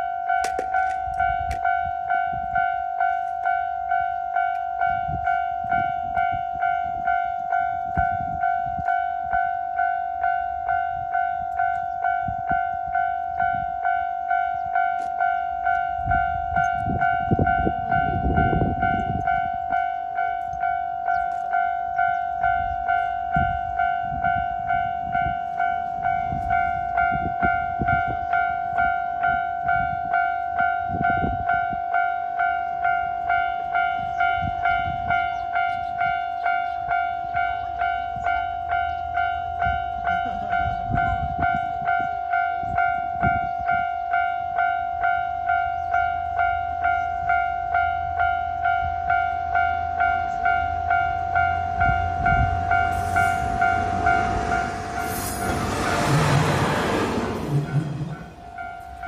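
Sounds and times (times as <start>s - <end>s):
level crossing warning bell: 0.0s - 59.0s
train rumbling past: 36.7s - 59.0s.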